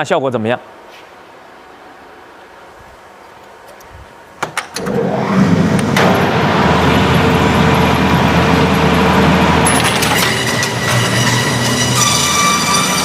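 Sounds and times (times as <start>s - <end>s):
machine clunks: 4.4s - 8.2s
machine mechanical clatter: 4.5s - 13.0s.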